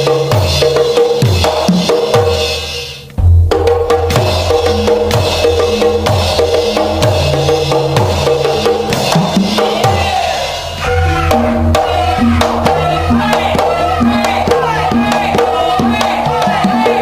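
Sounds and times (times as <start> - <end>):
drum beat: 0.0 - 17.0
bass line: 3.0 - 17.0
wavering melody: 4.2 - 17.0.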